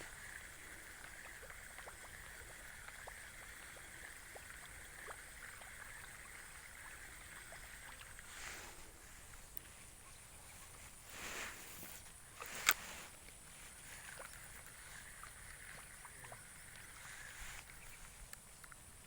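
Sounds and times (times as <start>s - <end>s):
light ticks: 17.6s - 18.8s.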